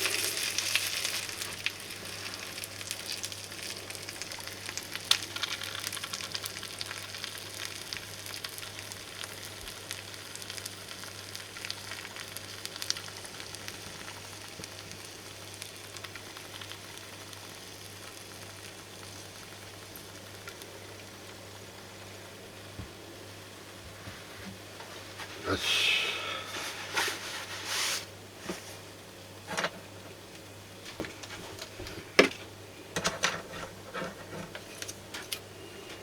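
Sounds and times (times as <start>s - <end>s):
fish sizzling in a grill pan: 0.0s - 23.8s.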